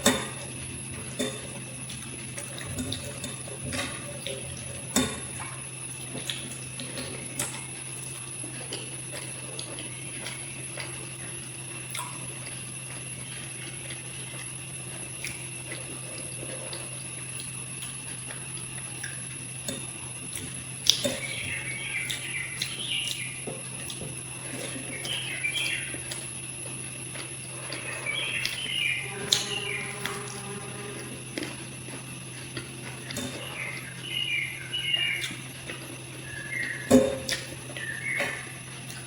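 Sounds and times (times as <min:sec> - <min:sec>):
electrical hum: 0:00.0 - 0:39.0
birds chirping: 0:20.0 - 0:39.0.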